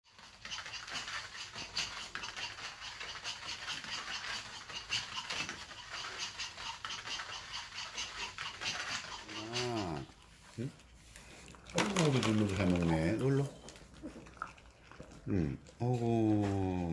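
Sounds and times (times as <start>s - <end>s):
dogs crunching dry kibble: 11.2s - 15.8s.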